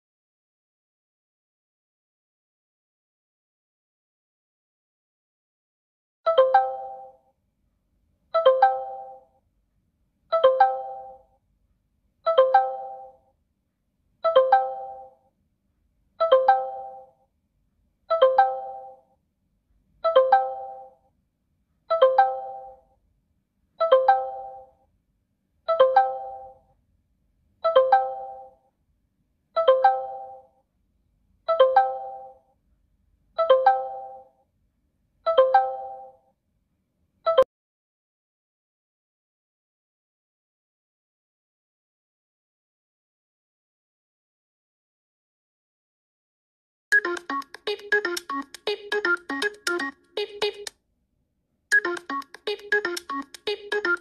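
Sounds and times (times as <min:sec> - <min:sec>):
two-strike ringtone chime: 0:46.9 - 0:50.0.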